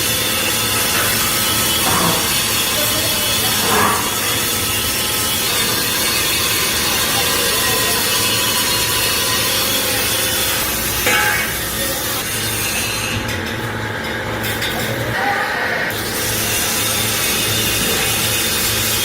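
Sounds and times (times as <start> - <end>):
machine working steel: 0.0 - 19.0
sharp metal scrapes: 0.4 - 13.7.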